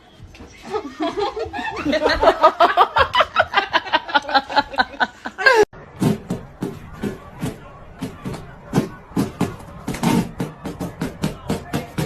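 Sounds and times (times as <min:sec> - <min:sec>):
person laughing hard: 0:00.9 - 0:05.7.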